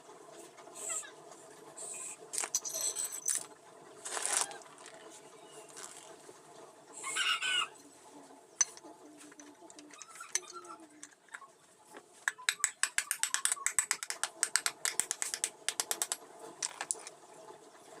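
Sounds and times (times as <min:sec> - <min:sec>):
metallic clinks and scrapes: 0:02.4 - 0:03.5, 0:08.6 - 0:11.5
chicken calling: 0:07.0 - 0:07.8.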